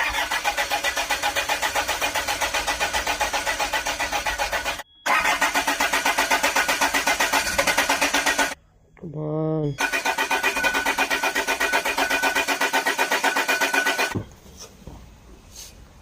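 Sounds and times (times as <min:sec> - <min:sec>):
diesel engine cranking on starter: 0:00.0 - 0:04.1.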